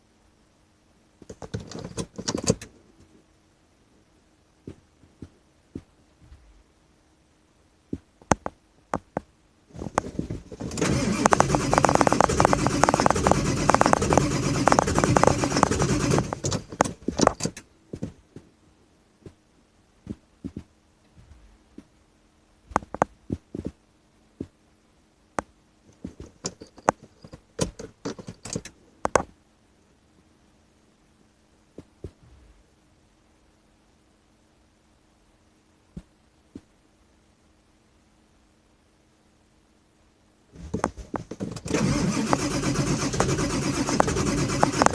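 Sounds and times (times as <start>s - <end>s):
diesel engine cranking on starter: 10.6s - 17.6s, 41.4s - 44.9s.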